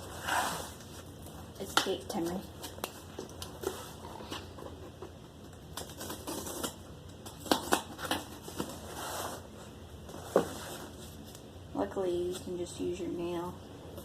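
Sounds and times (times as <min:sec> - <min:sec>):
fingers scratching packing tape: 0:05.7 - 0:08.3.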